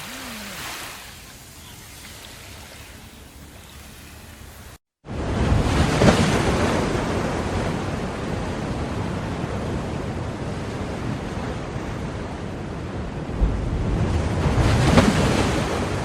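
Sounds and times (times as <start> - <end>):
ocean waves washing on shore: 0.0 - 16.0.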